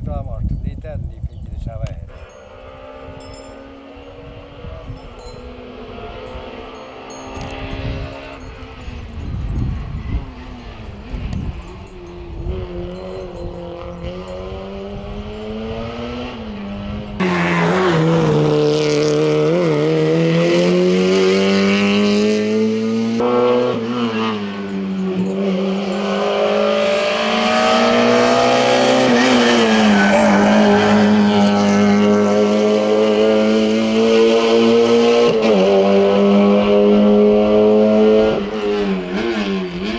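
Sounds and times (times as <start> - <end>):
wind rumbling on microphone: 0.0 - 22.1
rally car engine revving: 2.1 - 39.9.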